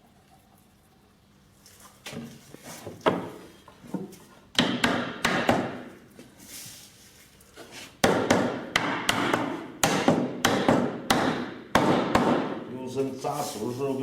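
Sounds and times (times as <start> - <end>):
hammer knocking on wood: 4.6 - 5.9, 8.0 - 12.6.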